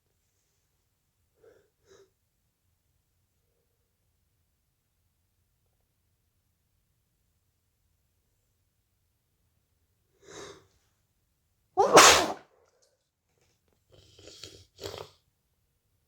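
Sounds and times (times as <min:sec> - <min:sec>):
person sneezing: 0:11.8 - 0:12.4.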